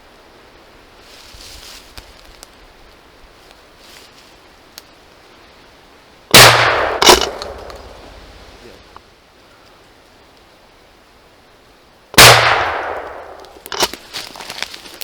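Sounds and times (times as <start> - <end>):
gunshots with echo: 6.3 - 8.3, 12.2 - 13.5.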